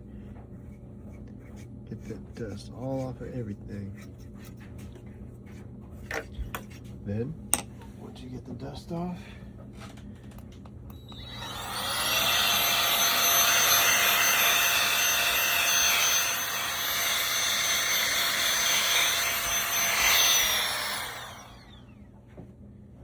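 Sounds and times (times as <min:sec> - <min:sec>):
electric air blower: 0:10.9 - 0:22.1.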